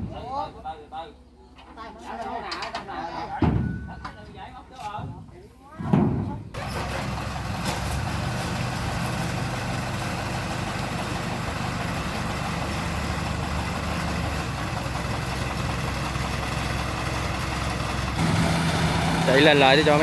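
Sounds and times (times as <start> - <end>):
large engine idling: 6.6 - 20.0.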